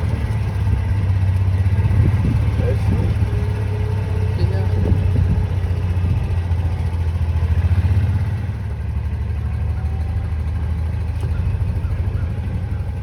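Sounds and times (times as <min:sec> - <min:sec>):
vehicle engine humming: 0:00.0 - 0:13.0.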